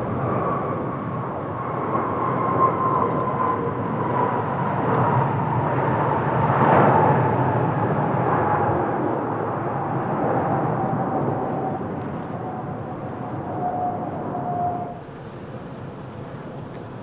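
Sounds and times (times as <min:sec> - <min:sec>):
airliner jet roar: 0:00.0 - 0:17.0
jet fan whine falling in pitch: 0:00.0 - 0:17.0.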